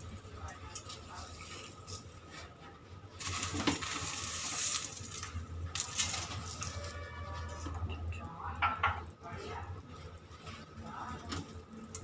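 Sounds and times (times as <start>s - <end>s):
vermicelli rustling into boiling water: 0.0s - 12.0s.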